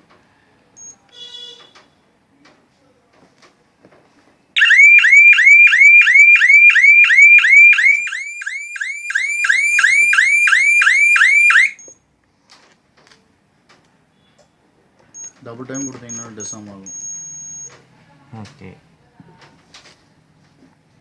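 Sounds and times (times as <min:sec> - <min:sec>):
alarm siren whooping: 0:04.6 - 0:11.8.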